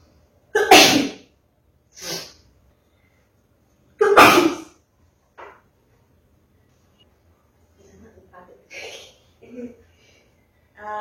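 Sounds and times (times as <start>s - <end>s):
person sneezing: 0.6s - 1.3s, 2.0s - 2.4s, 4.0s - 4.8s.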